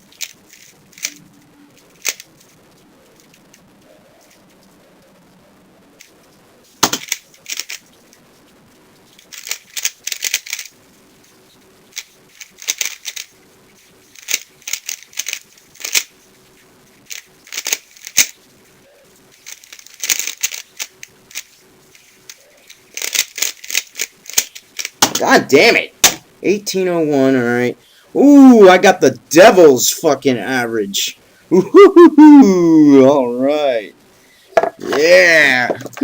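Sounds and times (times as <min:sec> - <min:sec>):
rapid plastic clicking of cube: 0:00.0 - 0:01.2, 0:01.8 - 0:02.5, 0:06.8 - 0:08.2, 0:09.1 - 0:10.8, 0:11.9 - 0:13.4, 0:14.1 - 0:16.2, 0:17.0 - 0:18.4, 0:19.3 - 0:25.2.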